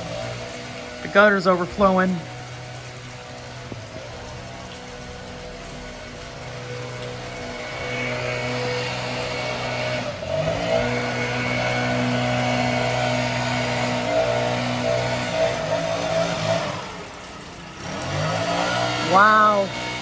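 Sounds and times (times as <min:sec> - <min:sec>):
leaf blower engine running: 0:00.0 - 0:04.6, 0:06.5 - 0:20.0.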